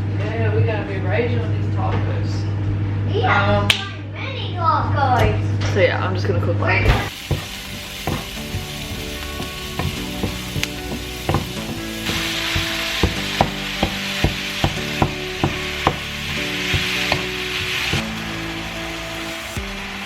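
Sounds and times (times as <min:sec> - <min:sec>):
food sizzling in a frying pan: 0:07.1 - 0:20.0
spoon knocking against pan: 0:07.3 - 0:08.6, 0:09.4 - 0:11.8, 0:12.6 - 0:18.1.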